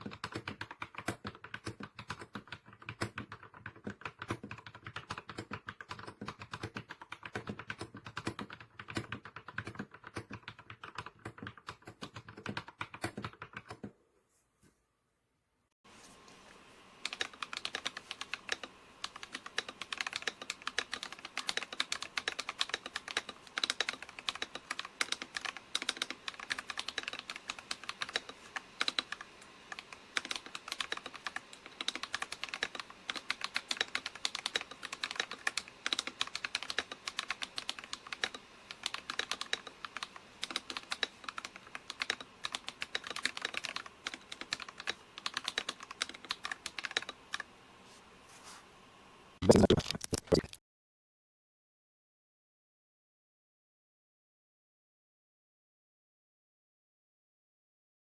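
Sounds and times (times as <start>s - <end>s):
mechanical keyboard typing: 0.0s - 13.9s, 17.0s - 47.5s.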